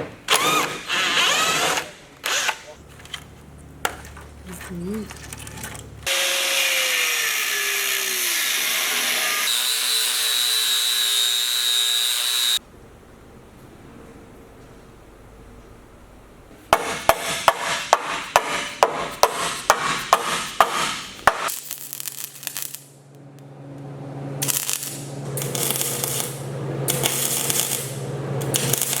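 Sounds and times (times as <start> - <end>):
hammer striking steel: 16.7 - 21.6
machine low hum: 23.0 - 29.0.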